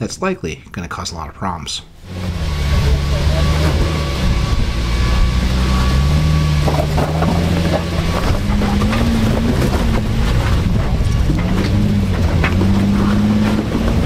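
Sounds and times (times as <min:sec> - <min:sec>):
off-road engine at low speed: 0:01.8 - 0:14.0
wind on microphone: 0:07.2 - 0:14.0.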